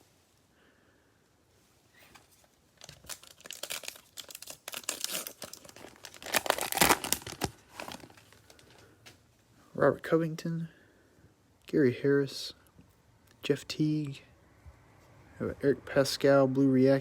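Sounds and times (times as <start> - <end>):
foil wrapper crinkling and tearing: 2.8 - 8.8.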